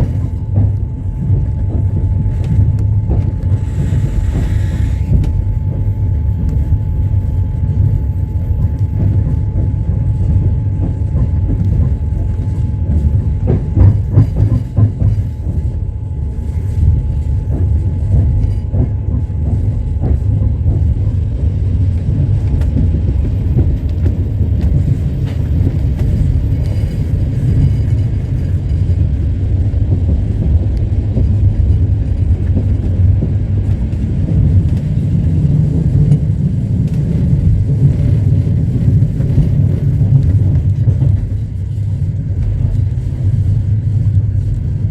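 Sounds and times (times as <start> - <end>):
train wheels rumbling on rails: 0.0 - 44.9.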